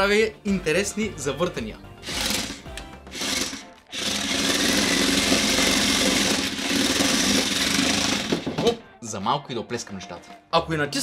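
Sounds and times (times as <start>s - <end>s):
small electric motors whirring: 2.0s - 8.4s
wheels rattling on tabletop: 3.2s - 8.8s.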